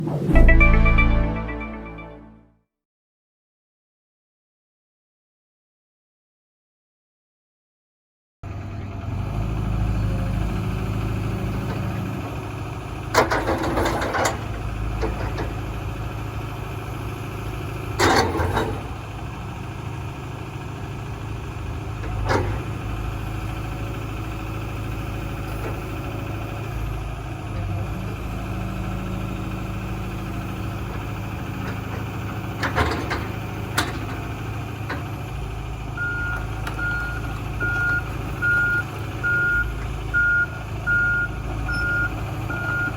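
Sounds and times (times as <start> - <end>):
excavator diesel engine running: 8.5 - 42.9
travel alarm beeping: 36.0 - 42.9.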